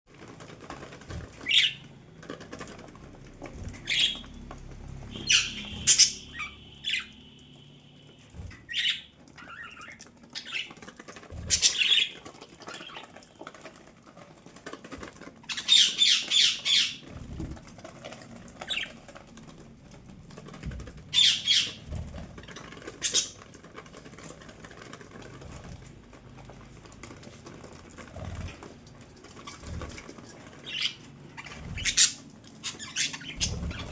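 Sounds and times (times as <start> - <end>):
budgerigars squawking and chirping: 1.4 - 1.8, 3.8 - 4.3, 5.1 - 7.2, 8.6 - 10.7, 11.5 - 13.1, 15.5 - 17.1, 21.1 - 21.9, 23.0 - 23.4, 30.6 - 33.9.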